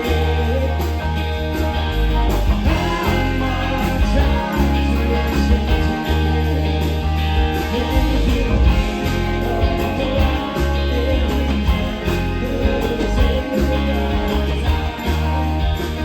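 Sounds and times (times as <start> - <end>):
bass line: 0.0 - 16.0
electric guitar: 0.0 - 16.0
drum beat: 2.3 - 6.3, 7.7 - 16.0.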